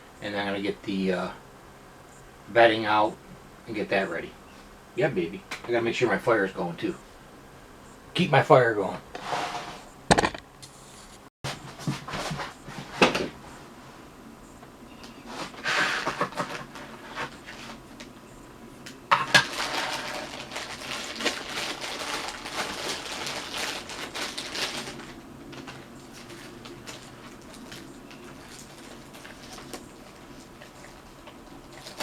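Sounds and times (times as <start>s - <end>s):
scraping and rustling in stove: 9.0s - 10.0s, 10.6s - 14.2s, 14.9s - 18.2s, 19.1s - 32.0s
metal clanks and knocks: 10.1s - 10.5s.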